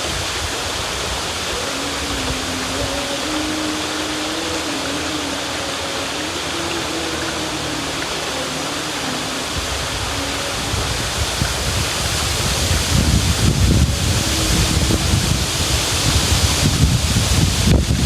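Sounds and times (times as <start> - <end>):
faint wavering hum: 0.0 - 18.0
river water rushing: 0.0 - 18.0.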